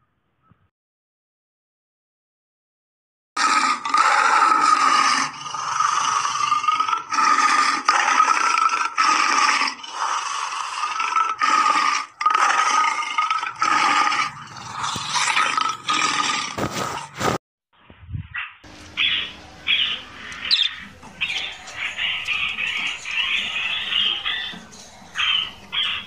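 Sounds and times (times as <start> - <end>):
harsh animal calls: 3.4 - 17.2, 19.0 - 26.0.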